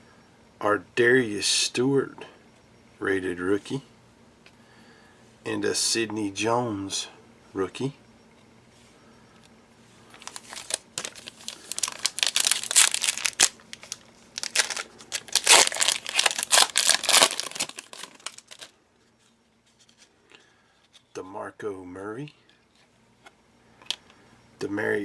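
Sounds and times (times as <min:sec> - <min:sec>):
foil wrapper tearing and crinkling: 0:10.2 - 0:18.7.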